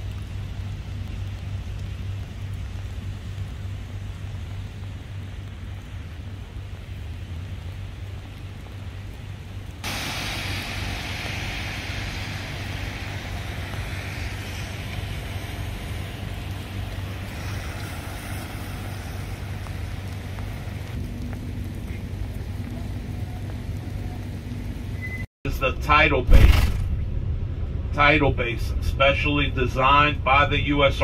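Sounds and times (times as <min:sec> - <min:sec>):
car road rumble: 0:00.0 - 0:31.0
rushing hiss: 0:09.8 - 0:21.0.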